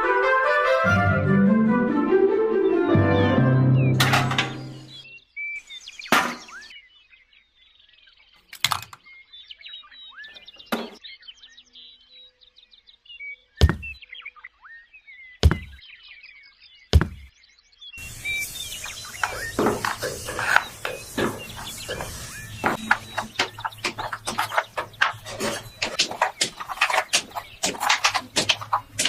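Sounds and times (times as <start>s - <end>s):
birds chirping: 3.2s - 29.0s
sharp knocks: 4.0s - 4.8s, 6.1s - 6.6s, 13.6s - 14.0s, 15.4s - 15.8s, 17.0s - 17.3s, 19.1s - 29.0s.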